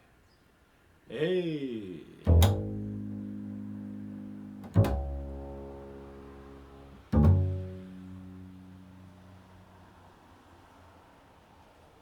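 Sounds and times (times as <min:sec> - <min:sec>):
low plucked string notes: 0:02.2 - 0:09.6.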